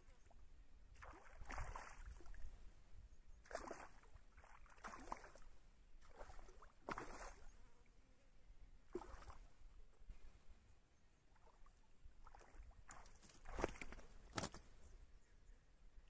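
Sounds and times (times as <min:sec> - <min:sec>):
muddy water sloshing and splashing: 0:00.1 - 0:02.7, 0:03.4 - 0:07.9, 0:08.9 - 0:09.7, 0:11.3 - 0:14.8.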